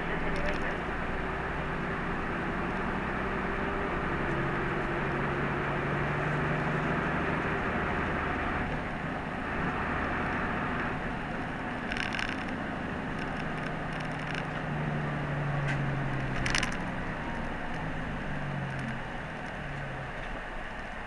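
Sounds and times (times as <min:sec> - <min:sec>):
light clicks and rattles: 0:00.0 - 0:01.0, 0:09.6 - 0:21.0
bus engine hum: 0:00.0 - 0:21.0
road noise: 0:00.0 - 0:21.0.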